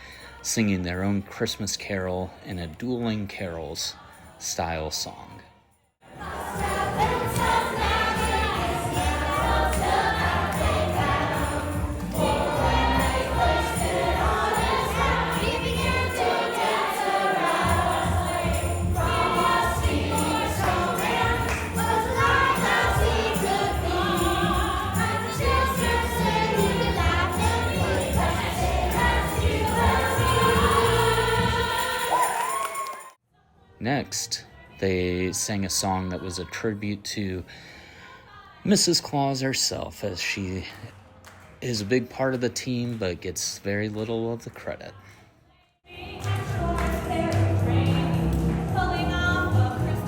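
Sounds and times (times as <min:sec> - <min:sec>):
group singing carols: 0:03.4 - 0:05.2, 0:06.0 - 0:33.0, 0:45.9 - 0:50.0.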